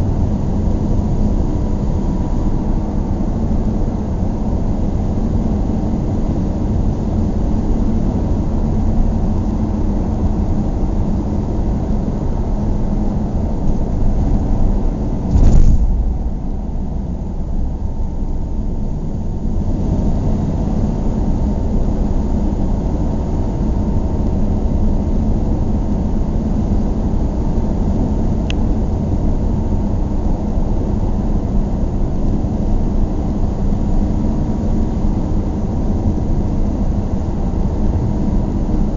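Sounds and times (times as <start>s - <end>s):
car interior road rumble: 12.3s - 22.9s
loud thump: 15.2s - 17.6s.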